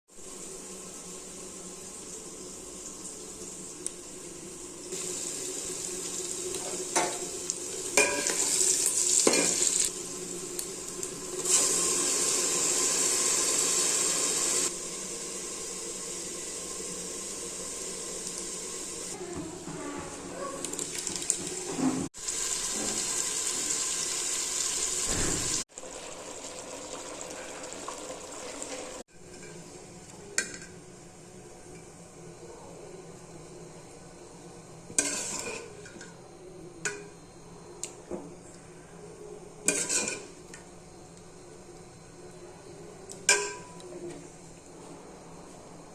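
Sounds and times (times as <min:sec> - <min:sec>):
curry sizzling in a pan: 0:00.1 - 0:19.2, 0:20.6 - 0:30.8, 0:33.4 - 0:36.2, 0:39.4 - 0:40.9.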